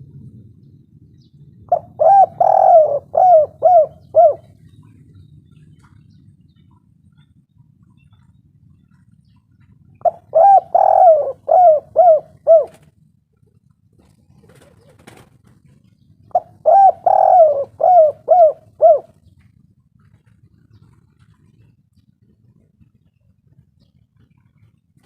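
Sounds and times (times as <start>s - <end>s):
dove cooing: 1.6s - 6.2s, 8.9s - 13.0s, 14.0s - 24.8s.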